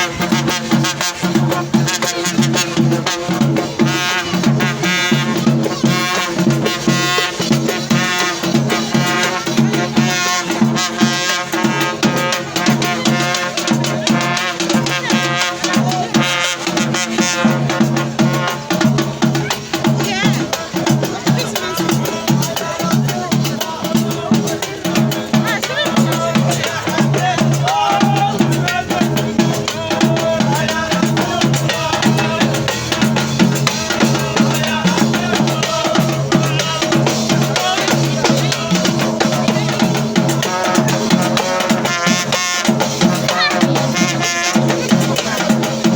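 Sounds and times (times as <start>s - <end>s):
music with drums and brass: 0.0s - 45.9s
bass line: 25.4s - 36.5s.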